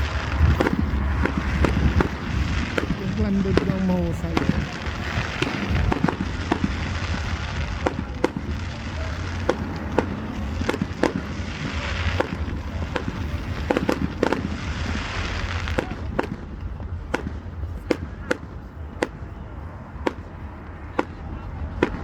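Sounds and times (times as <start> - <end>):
fireworks bangs: 0.0 - 22.0
fireworks hissing crackle: 0.0 - 22.0.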